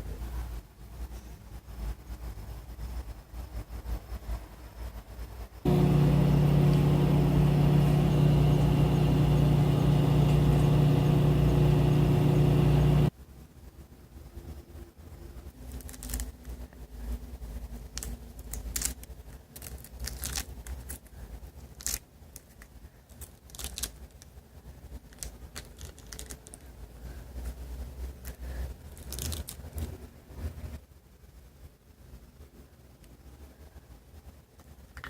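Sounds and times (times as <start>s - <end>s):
steady low hum: 5.6s - 13.1s
crackles and crinkles of handling: 15.6s - 30.8s.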